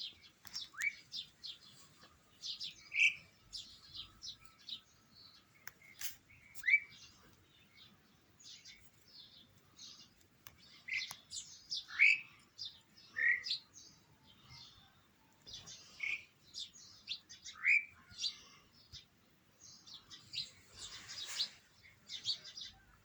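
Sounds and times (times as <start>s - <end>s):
bird chirping: 0.0s - 23.0s.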